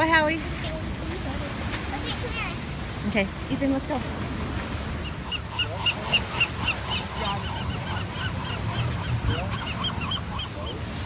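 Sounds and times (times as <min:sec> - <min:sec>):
low rumble of surf or wind: 0:00.0 - 0:11.0
faint animal calls: 0:05.0 - 0:10.8.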